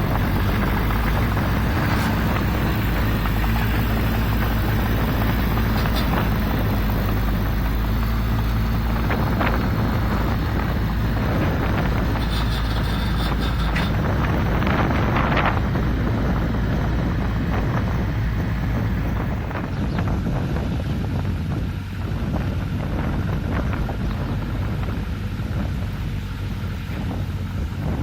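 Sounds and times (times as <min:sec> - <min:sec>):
bulldozer diesel engine running: 0:00.0 - 0:28.0
machine clanks and squeaks: 0:05.5 - 0:06.9, 0:12.1 - 0:14.4.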